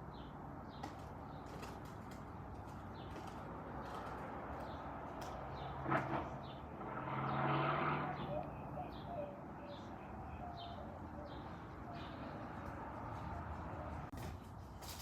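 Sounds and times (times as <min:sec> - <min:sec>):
motor vehicle passing: 0:00.5 - 0:14.8
bird calls: 0:05.5 - 0:14.1.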